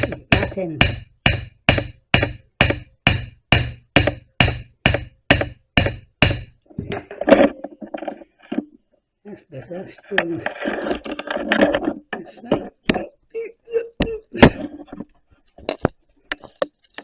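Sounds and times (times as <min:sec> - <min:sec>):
hammer tapping on metal: 0:00.0 - 0:06.6
knocks and rattles: 0:00.0 - 0:08.7.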